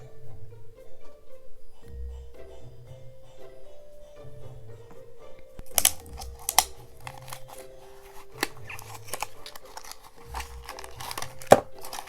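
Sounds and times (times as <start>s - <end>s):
soft background music: 0.0s - 12.0s
scissors snipping: 5.6s - 12.0s
packaging tearing and crinkling: 5.7s - 12.0s.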